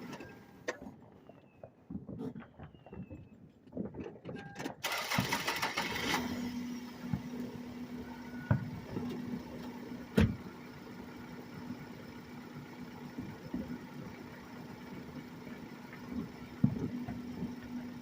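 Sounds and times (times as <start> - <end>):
steady low hum: 6.2 - 18.0.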